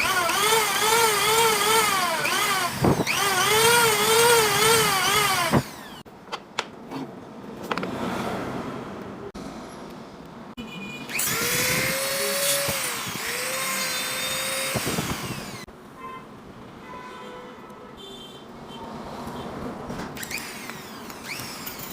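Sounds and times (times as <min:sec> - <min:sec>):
power sander whining: 0:00.0 - 0:06.0, 0:11.1 - 0:15.7, 0:20.2 - 0:21.9.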